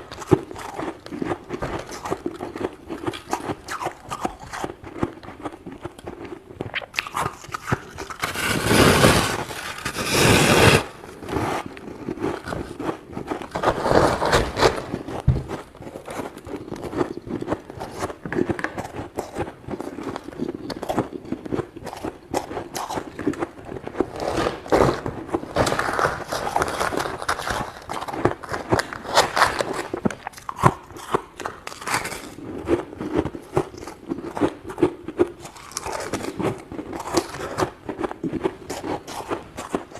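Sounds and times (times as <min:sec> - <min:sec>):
freezer frost being scraped: 0:07.2 - 0:15.3.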